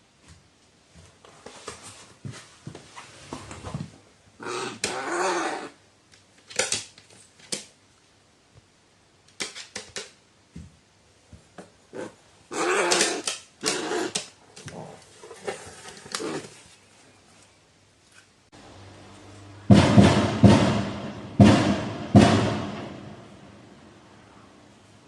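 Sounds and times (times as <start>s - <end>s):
pet animal rough vocalizing: 4.4s - 5.8s, 11.9s - 16.5s.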